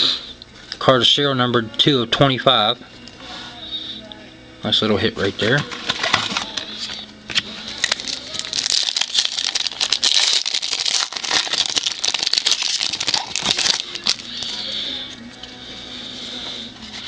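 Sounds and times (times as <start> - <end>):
wrapper crinkling: 5.4 - 14.7
cards being handled: 5.5 - 14.6.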